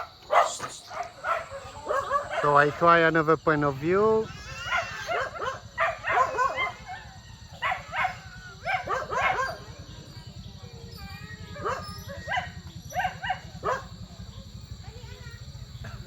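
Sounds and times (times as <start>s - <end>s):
dog barking: 0.0s - 3.0s, 4.6s - 9.8s, 11.5s - 14.0s.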